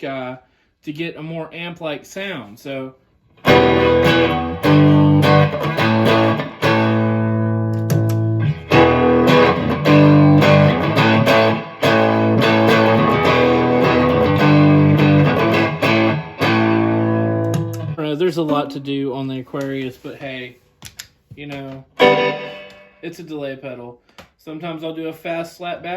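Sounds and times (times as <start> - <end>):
overdriven electric guitar chords: 3.4 - 18.0, 22.0 - 23.0.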